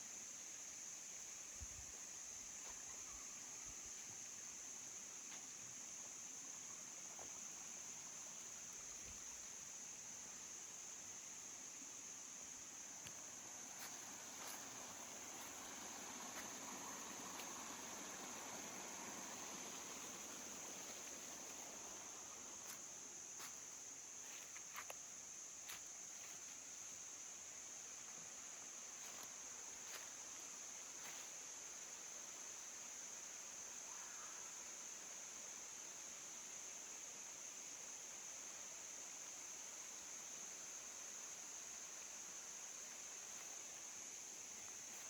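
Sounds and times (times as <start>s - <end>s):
high-pitched insect drone: 2.2s - 45.0s
faint ticks: 13.0s - 18.8s, 24.5s - 25.0s.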